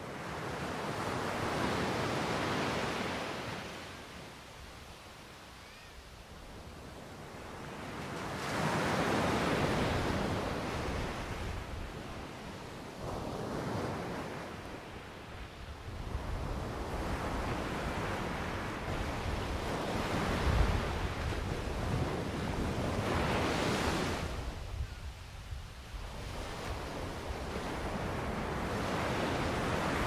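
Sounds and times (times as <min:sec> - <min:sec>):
ocean surf waves: 0:00.0 - 0:04.0, 0:07.2 - 0:15.4, 0:16.6 - 0:24.5, 0:26.3 - 0:30.0
wind rumble on microphone: 0:15.6 - 0:30.0.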